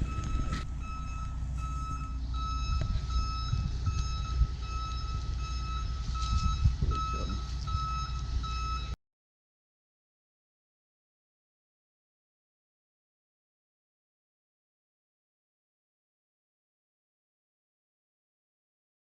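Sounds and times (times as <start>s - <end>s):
truck engine rumble: 0.0s - 9.0s
truck reversing alarm beeping: 0.0s - 9.0s.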